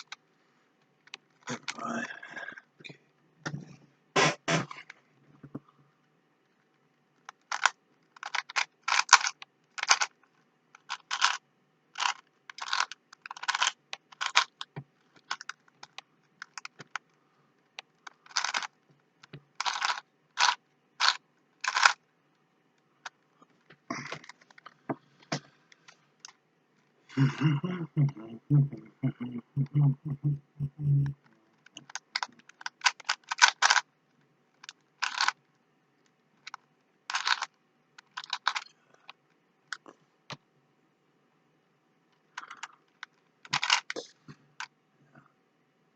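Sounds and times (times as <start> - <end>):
puzzle cube clicking as twisted: 7.2 - 11.4, 12.0 - 17.1, 17.8 - 22.0, 31.0 - 33.9, 34.6 - 35.4, 36.4 - 38.7, 42.4 - 44.0.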